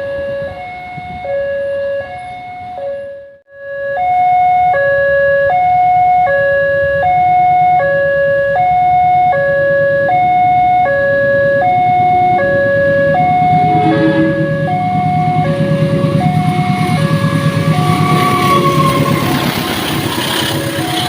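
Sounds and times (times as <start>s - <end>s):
level crossing two-tone alarm: 0.0s - 20.0s
low rumble: 11.4s - 21.0s.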